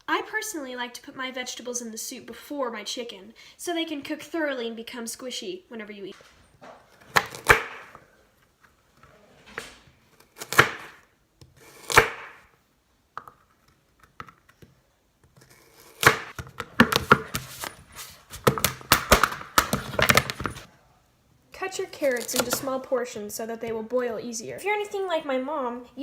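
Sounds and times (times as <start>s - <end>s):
knife chopping on cutting board: 7.0s - 7.9s, 10.4s - 11.0s, 11.8s - 12.4s, 16.0s - 17.6s.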